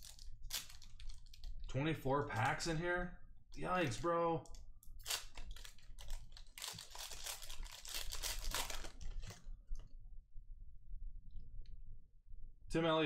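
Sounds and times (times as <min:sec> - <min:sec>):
wrapper tearing and crinkling: 0:00.0 - 0:01.5, 0:03.8 - 0:09.5.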